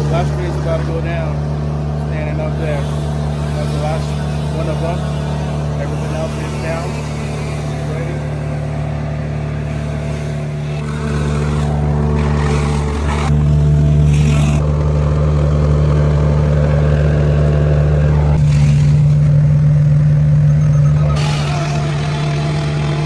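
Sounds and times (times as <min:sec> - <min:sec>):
engine humming: 0:00.0 - 0:23.0.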